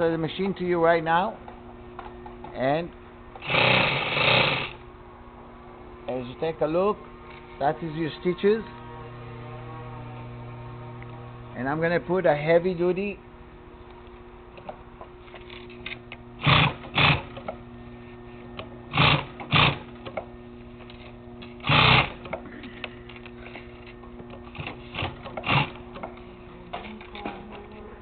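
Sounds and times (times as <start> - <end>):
sewing machine stitching: 3.4 - 4.7, 16.4 - 17.4, 18.9 - 19.9, 21.6 - 22.2, 24.5 - 25.9
sewing machine motor humming: 3.4 - 4.8, 16.4 - 17.6, 18.9 - 20.2, 21.4 - 22.4, 24.2 - 26.2.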